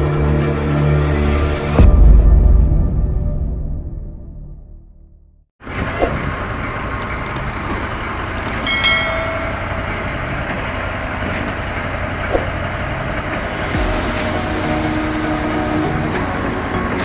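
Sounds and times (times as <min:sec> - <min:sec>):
heavy truck engine running: 0:05.6 - 0:17.0.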